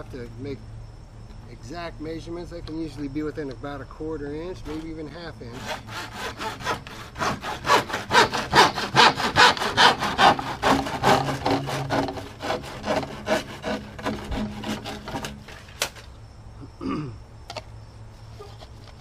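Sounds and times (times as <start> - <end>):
hand saw cutting plastic pipe: 4.6 - 15.9.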